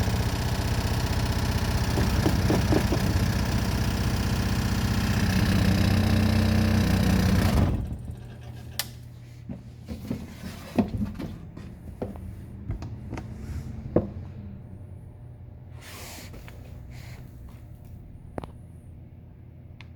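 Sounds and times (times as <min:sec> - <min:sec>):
machine motor humming: 0:00.0 - 0:08.1.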